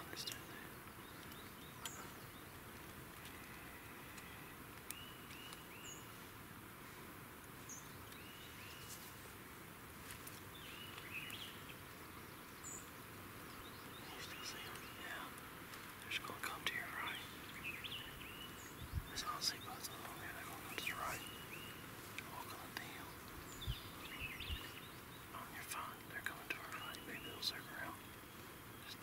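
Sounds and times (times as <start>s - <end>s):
bird chirps: 0.0s - 2.6s, 10.5s - 15.4s, 16.1s - 29.0s
faint clicks: 0.0s - 5.9s, 13.6s - 17.3s, 22.1s - 23.8s, 24.4s - 29.0s
insect-like hiss: 13.8s - 29.0s.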